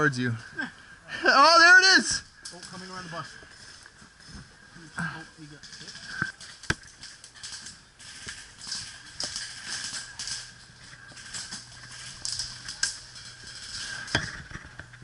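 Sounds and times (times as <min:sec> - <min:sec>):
gear rustling: 0:02.3 - 0:15.0.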